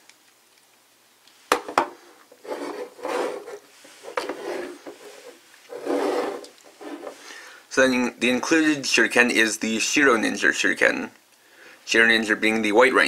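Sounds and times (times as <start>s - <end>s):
plastic rubbing and scraping: 2.3s - 7.2s.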